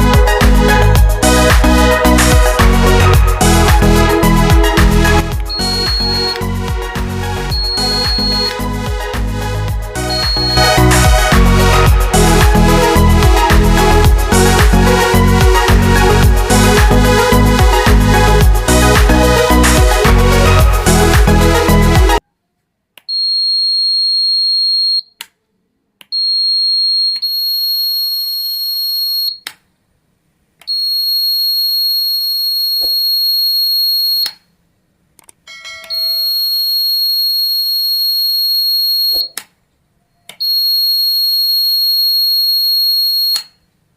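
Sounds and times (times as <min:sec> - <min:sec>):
door alarm buzzer tone: 0:05.5 - 0:06.4, 0:07.5 - 0:08.6, 0:10.0 - 0:10.9, 0:26.2 - 0:29.4, 0:30.7 - 0:34.4, 0:35.9 - 0:39.4, 0:40.4 - 0:43.6.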